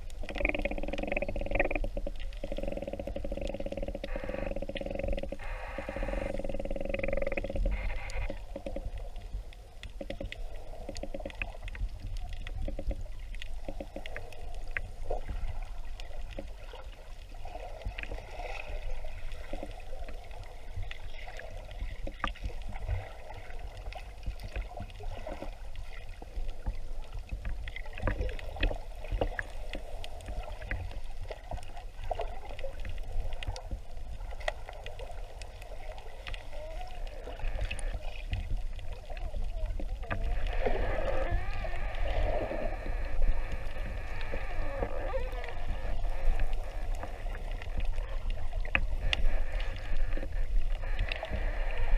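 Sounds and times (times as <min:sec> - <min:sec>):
underwater clicks and crackles: 0:00.0 - 0:51.9
underwater low rumble and hum: 0:00.0 - 0:51.9.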